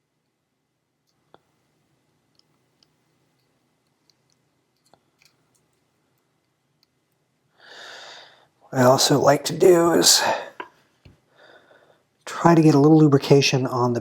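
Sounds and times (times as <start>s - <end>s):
faint clicks of knife parts: 2.3s - 7.3s.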